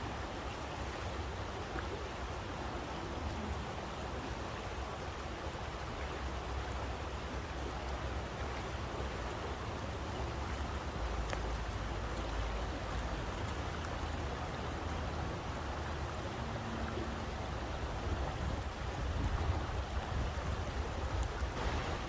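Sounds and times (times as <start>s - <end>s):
rushing white noise: 0.0s - 22.0s
faint ticks: 11.2s - 12.3s.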